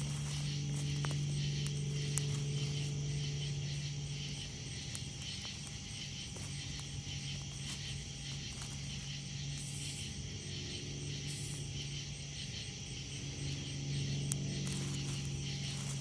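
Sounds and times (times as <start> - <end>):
campfire crackling and popping: 0.0 - 16.0
low steady hum: 0.0 - 16.0
night insects calling: 0.0 - 16.0.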